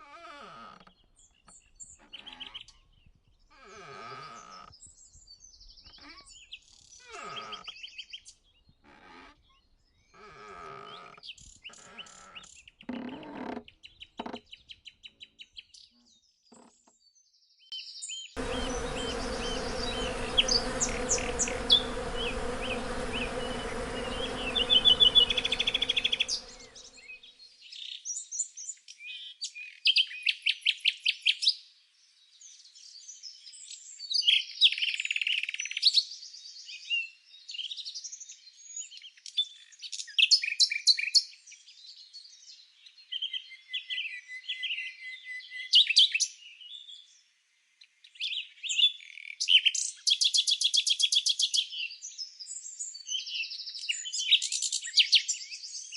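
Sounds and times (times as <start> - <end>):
songbirds chirping: 17.6 - 27.2
insect buzzing: 18.4 - 27.2.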